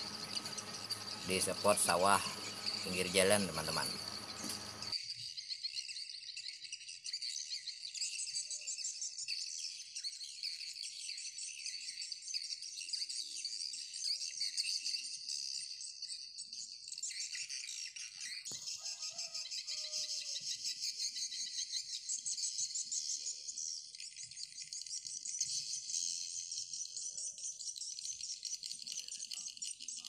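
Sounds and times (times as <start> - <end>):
insects chirping: 0.0 - 4.9.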